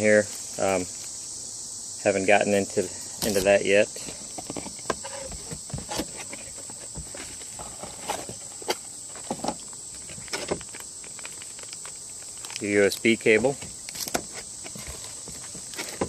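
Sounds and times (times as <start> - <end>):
steady high-pitched hiss: 0.0 - 16.0
packaging rustling: 9.2 - 13.0.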